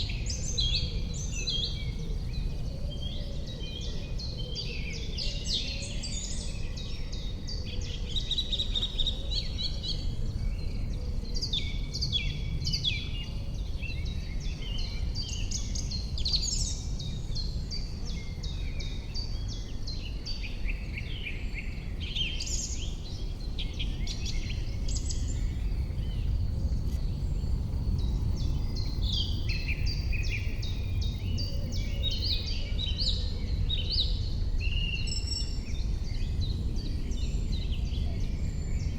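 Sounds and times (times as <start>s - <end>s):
songbirds singing: 0.0s - 38.9s
steady low rumble: 22.7s - 38.9s.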